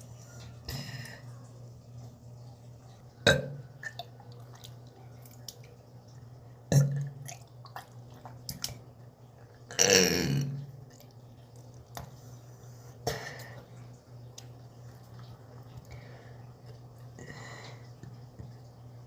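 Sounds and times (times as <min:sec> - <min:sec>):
person burping: 0:03.3 - 0:04.0, 0:06.7 - 0:07.2, 0:09.7 - 0:10.6.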